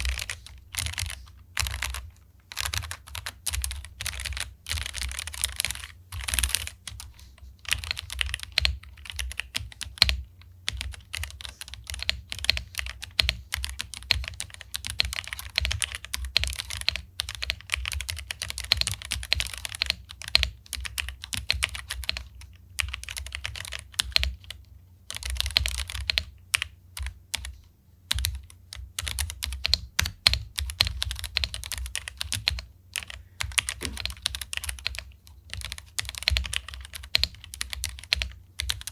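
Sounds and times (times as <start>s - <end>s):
mechanical keyboard typing: 0.0s - 27.5s, 28.1s - 38.9s.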